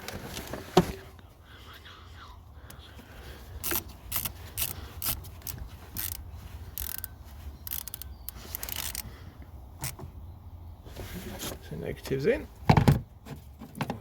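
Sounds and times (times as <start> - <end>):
socket ratchet clicking: 3.6 - 9.1.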